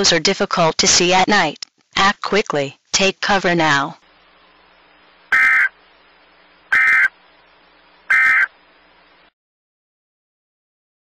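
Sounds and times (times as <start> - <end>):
faint hiss: 0.6 - 9.3
buzzy digital data bursts: 5.3 - 5.9, 6.7 - 7.2, 8.1 - 8.5.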